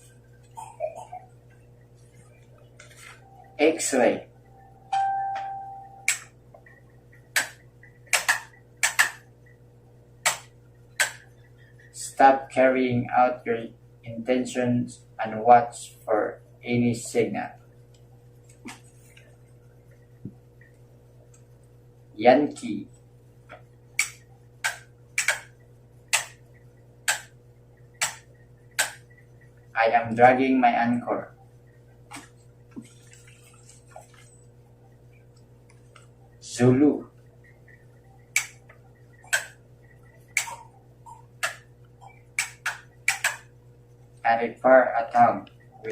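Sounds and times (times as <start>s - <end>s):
faint steady hum: 0.0s - 45.9s
sharp clicks: 7.2s - 9.2s, 24.0s - 25.5s, 27.0s - 27.4s, 37.4s - 39.6s, 42.4s - 43.4s.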